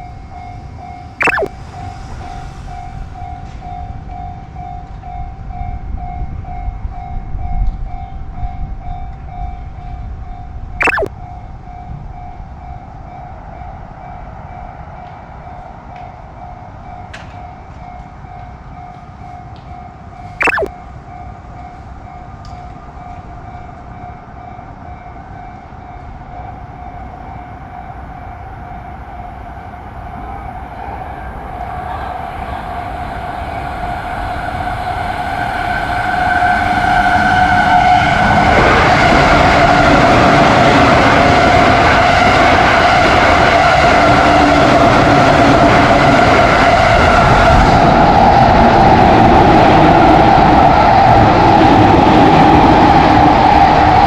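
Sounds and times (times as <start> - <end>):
electric train passing: 0.3 - 6.0
level crossing alarm tone: 1.2 - 1.5, 10.8 - 11.1, 20.4 - 20.7.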